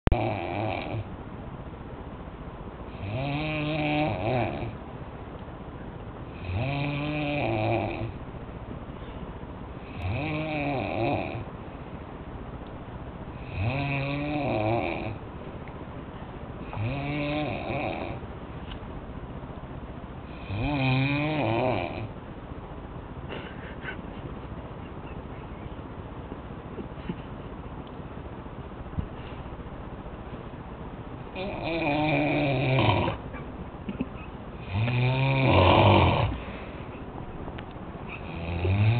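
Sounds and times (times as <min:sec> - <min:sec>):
man snoring: 0:00.1 - 0:01.1, 0:02.9 - 0:04.8, 0:06.4 - 0:08.2, 0:09.8 - 0:11.5, 0:13.4 - 0:15.2, 0:16.6 - 0:18.2, 0:20.3 - 0:22.1, 0:31.4 - 0:33.2, 0:34.6 - 0:36.5, 0:38.2 - 0:38.9
quiet breathing: 0:36.2 - 0:37.1.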